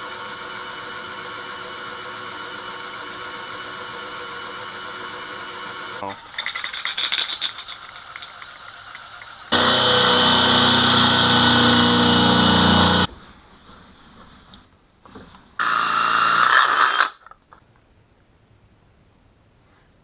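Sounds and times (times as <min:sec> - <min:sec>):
electric drill cutting: 0:00.0 - 0:06.0, 0:09.5 - 0:13.1, 0:15.6 - 0:17.2.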